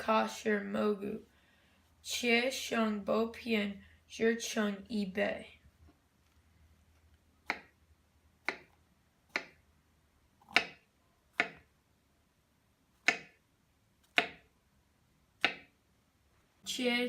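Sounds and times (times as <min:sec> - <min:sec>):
knife chopping on cutting board: 0:08.4 - 0:09.6, 0:10.4 - 0:10.8, 0:11.4 - 0:11.6, 0:13.0 - 0:13.4, 0:14.1 - 0:14.4, 0:15.4 - 0:15.7.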